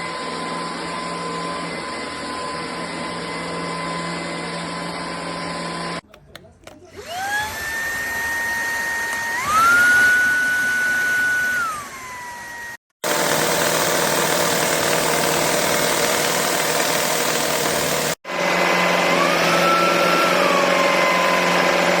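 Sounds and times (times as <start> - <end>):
stick vacuum motor whine: 6.7 - 22.0.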